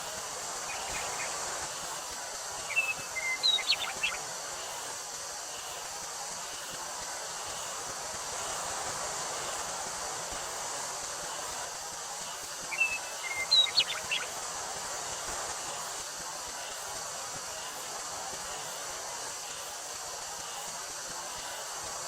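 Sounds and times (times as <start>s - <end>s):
cicadas droning: 0.0s - 22.0s
wind rustling through wheat: 0.0s - 22.0s
bird chirping: 0.6s - 1.8s, 2.6s - 4.3s, 12.7s - 14.4s.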